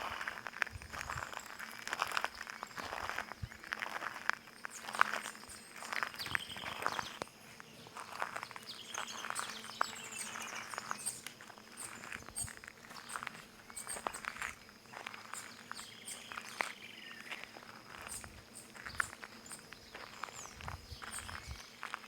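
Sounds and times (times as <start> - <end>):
footsteps on stone: 0.0 - 22.0
birds chirping: 4.6 - 22.0.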